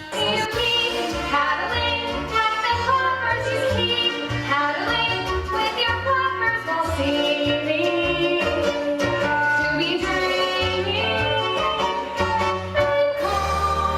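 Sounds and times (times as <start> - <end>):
voices singing: 0.0 - 2.2, 12.8 - 13.9
instrumental accompaniment with bass: 0.0 - 13.9.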